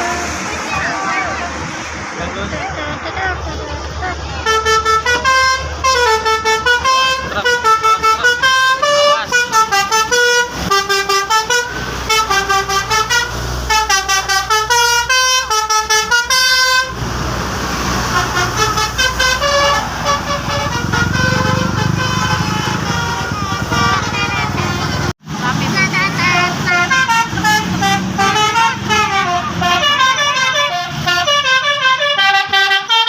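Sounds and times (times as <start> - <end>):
vehicle noise: 0.0 - 33.0
musical air horn playing a tune: 4.4 - 17.0, 18.0 - 25.1, 26.2 - 33.0.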